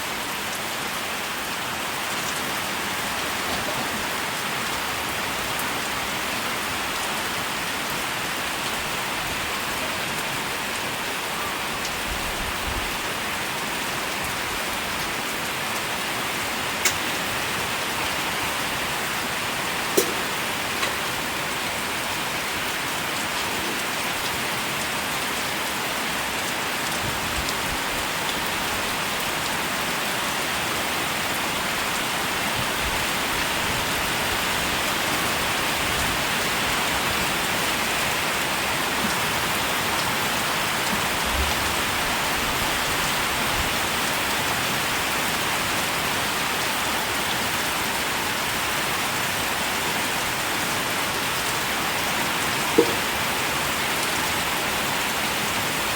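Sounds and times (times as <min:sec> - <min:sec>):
steady rain pattering: 0:00.0 - 0:55.9
faint low knocks: 0:52.8 - 0:53.1.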